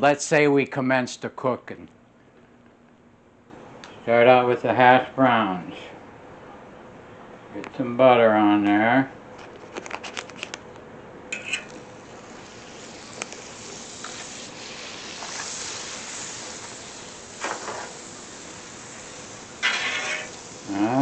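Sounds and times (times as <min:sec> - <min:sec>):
butter sizzling on a griddle: 0:11.4 - 0:21.0.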